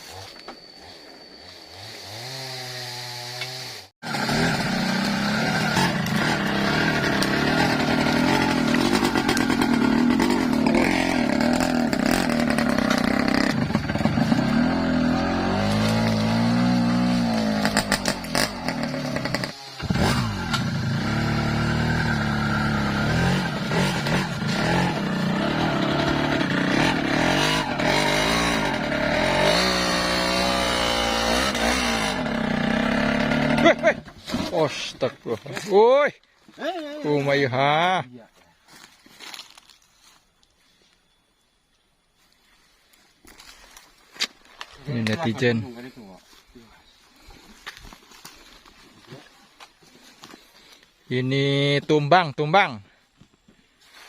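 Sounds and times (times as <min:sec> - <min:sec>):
two-stroke motorcycle engine revving: 0:01.8 - 0:34.4.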